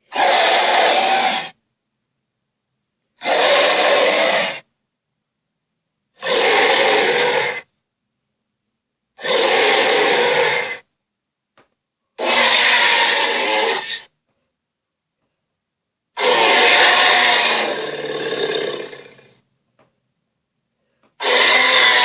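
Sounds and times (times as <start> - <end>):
harsh breathy creature roars: 0.1 - 1.6, 3.2 - 4.6, 6.2 - 7.6, 9.2 - 10.8, 12.2 - 14.1, 16.2 - 19.4, 21.2 - 22.0.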